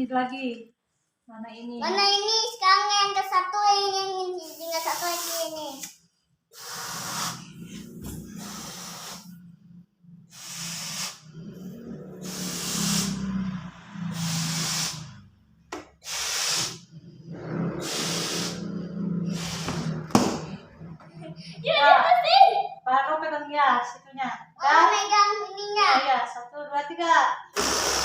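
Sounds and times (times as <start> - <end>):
balloon inflating air rushing: 4.4 - 5.9, 6.5 - 9.6, 10.3 - 21.6, 27.5 - 28.0.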